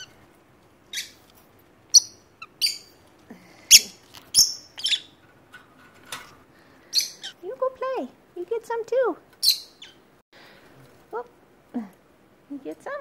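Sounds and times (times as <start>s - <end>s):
lovebirds chirping: 0.0s - 5.2s, 6.6s - 8.0s, 9.3s - 10.5s.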